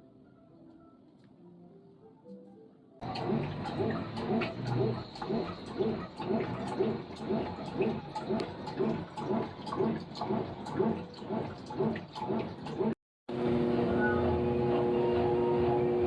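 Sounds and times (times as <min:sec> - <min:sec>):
washing machine sloshing: 0:03.0 - 0:16.0.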